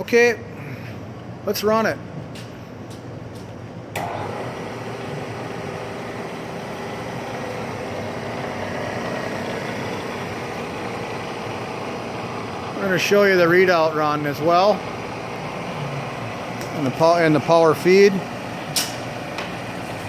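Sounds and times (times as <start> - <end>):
milling machine motor whining: 4.0 - 20.0.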